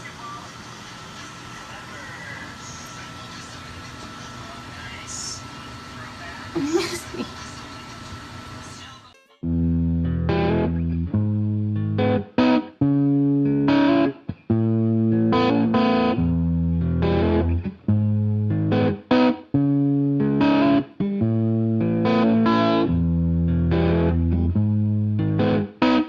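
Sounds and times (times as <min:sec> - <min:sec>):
distorted guitar chords: 0:09.4 - 0:26.0.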